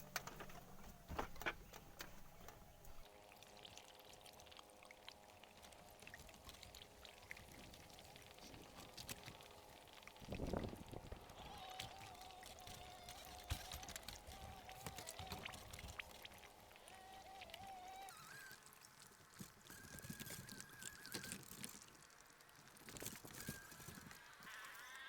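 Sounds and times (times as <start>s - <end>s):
river water trickling: 0.0s - 25.0s
faint whistle-like tone: 17.0s - 21.8s, 23.2s - 25.0s.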